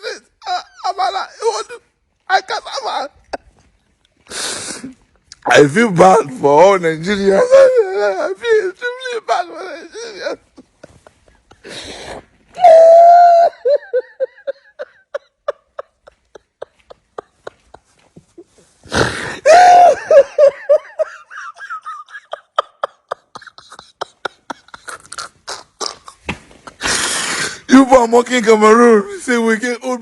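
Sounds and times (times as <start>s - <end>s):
person laughing: 7.1s - 12.2s, 12.8s - 27.3s.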